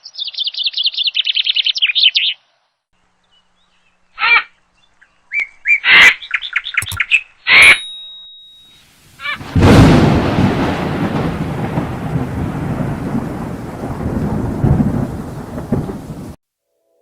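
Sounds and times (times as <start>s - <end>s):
thunder rumble: 9.4s - 16.4s.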